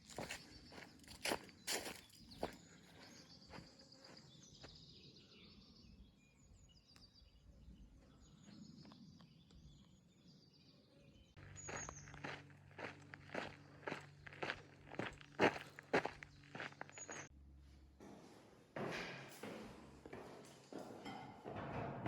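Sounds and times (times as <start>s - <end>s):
footsteps on a path: 0.0s - 5.0s, 11.4s - 17.3s
small birds chirping: 0.0s - 17.3s.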